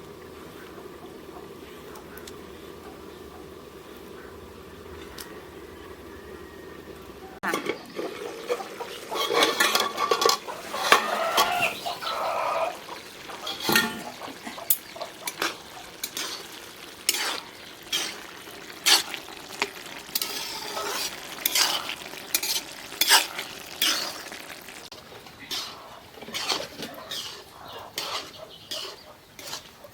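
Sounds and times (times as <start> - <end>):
metal spoon scraping a pot: 9.1 - 12.8, 13.4 - 19.2, 20.1 - 24.3, 25.4 - 29.8.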